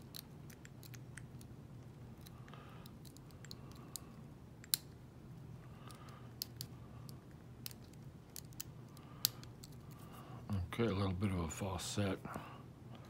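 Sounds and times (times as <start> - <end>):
faint low hum: 0.0 - 13.0
lock pick clicking on pins: 2.2 - 5.0.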